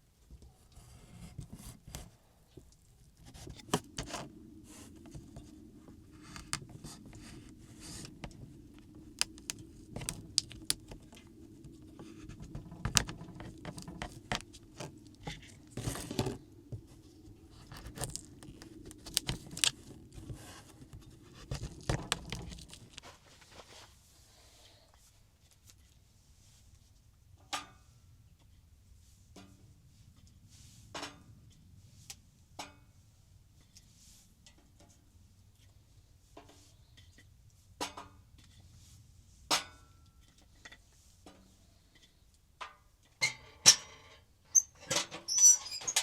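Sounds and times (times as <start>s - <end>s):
steady low hum: 0.4s - 23.0s
objects clattering and scraping: 2.6s - 24.0s, 43.2s - 46.0s.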